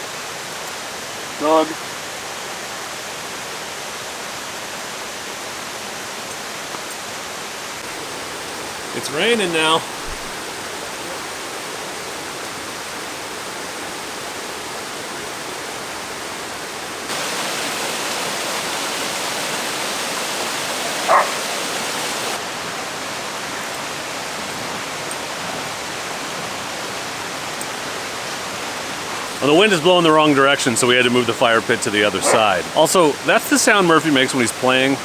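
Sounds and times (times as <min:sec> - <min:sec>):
waterfall rushing: 0:00.0 - 0:35.0
dog yelp: 0:21.0 - 0:21.5, 0:32.2 - 0:32.5.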